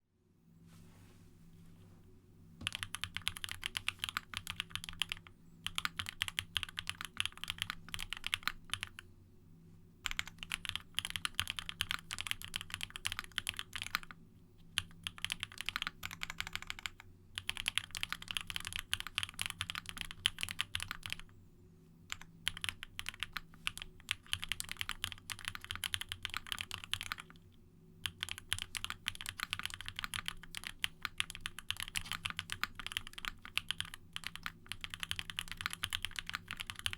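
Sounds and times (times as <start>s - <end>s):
mechanical keyboard typing: 2.6s - 9.0s, 10.0s - 21.3s, 22.1s - 27.4s, 28.0s - 36.9s.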